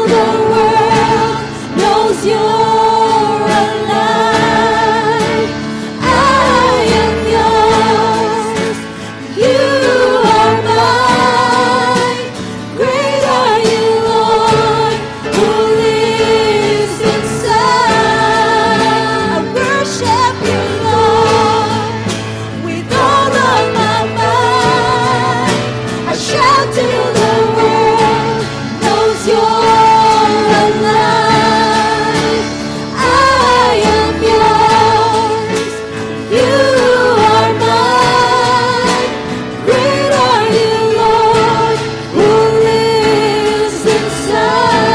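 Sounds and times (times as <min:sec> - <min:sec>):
instrumental accompaniment: 0:00.0 - 0:44.9
voices singing with vibrato: 0:00.0 - 0:44.9.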